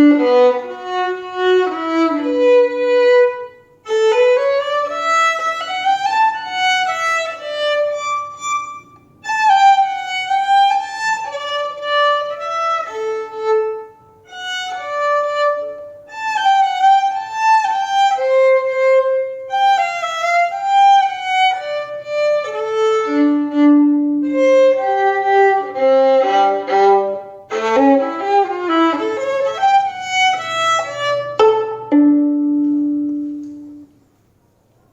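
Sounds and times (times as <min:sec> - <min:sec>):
solo violin staccato melody: 0:00.0 - 0:33.9.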